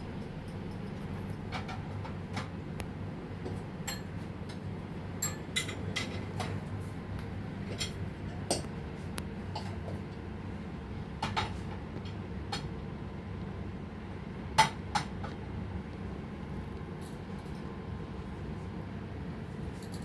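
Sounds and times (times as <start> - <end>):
steady low hum: 0.0 - 20.0
kitchenware clicks and clinks: 3.8 - 4.1, 5.2 - 6.6.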